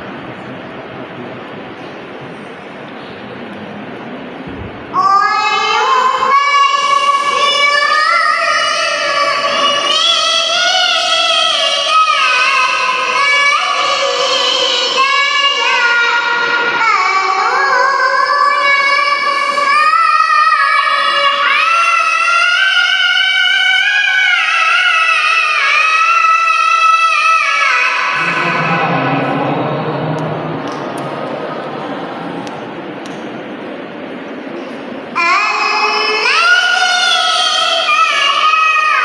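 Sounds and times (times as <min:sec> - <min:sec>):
girl chanting melodically: 0:04.9 - 0:28.8, 0:34.6 - 0:39.0.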